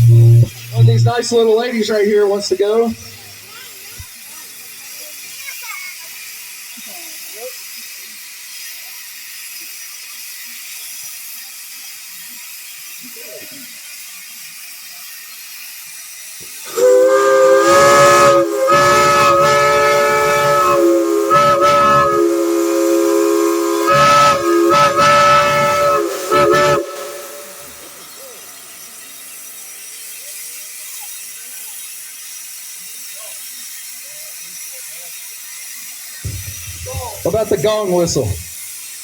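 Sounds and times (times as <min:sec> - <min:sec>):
chime steam whistle: 0:00.0 - 0:01.5, 0:16.6 - 0:29.5, 0:36.3 - 0:38.4
steam hiss: 0:00.0 - 0:39.0.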